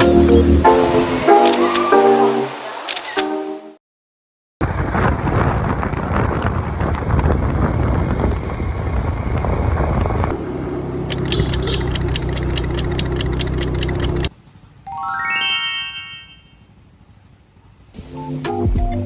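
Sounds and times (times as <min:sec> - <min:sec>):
wind rushing over microphone: 0:04.6 - 0:10.4
motorbike engine: 0:05.9 - 0:14.3
fast regular ticking: 0:11.1 - 0:14.3.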